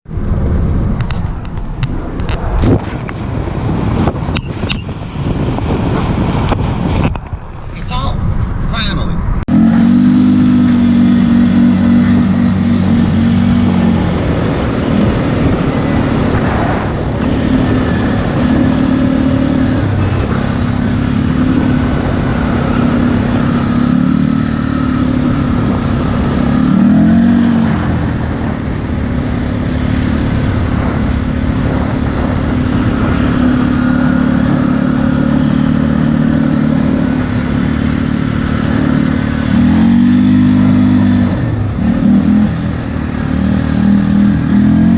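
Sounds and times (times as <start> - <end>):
atv engine revving: 9.4 - 44.9.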